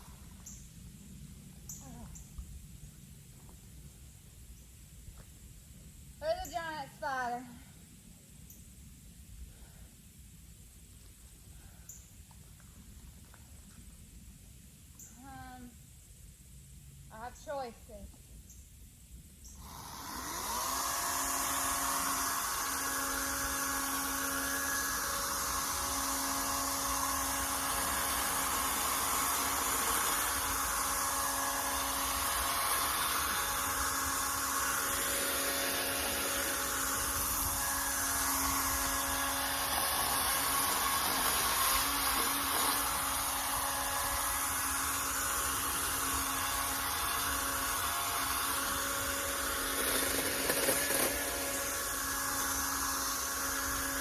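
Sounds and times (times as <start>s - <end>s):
power tool motor whining: 19.5s - 54.0s.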